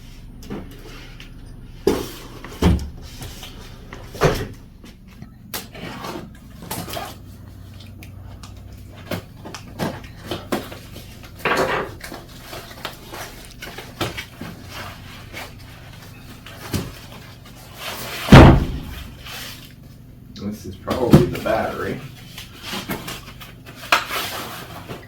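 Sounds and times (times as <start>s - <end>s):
loud heavy thump: 1.8s - 5.0s, 18.3s - 19.2s.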